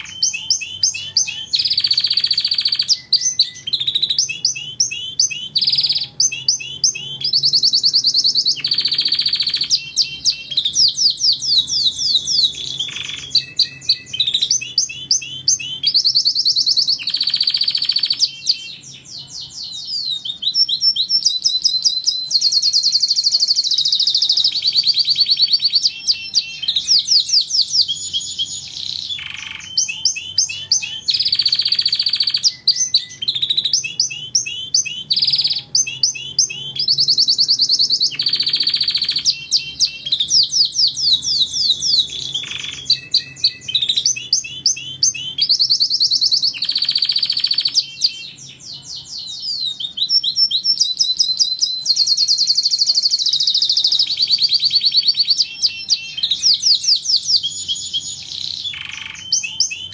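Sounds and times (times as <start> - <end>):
canary singing: 0.0 - 59.9.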